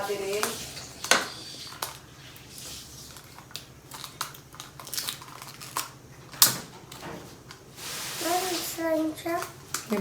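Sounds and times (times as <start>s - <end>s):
plastic packaging crinkling: 0.1s - 6.1s.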